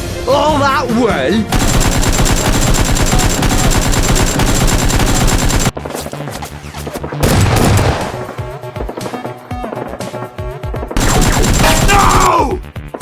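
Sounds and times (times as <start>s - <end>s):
background music: 0.0s - 13.0s
automatic gunfire: 1.5s - 5.8s, 11.0s - 12.3s.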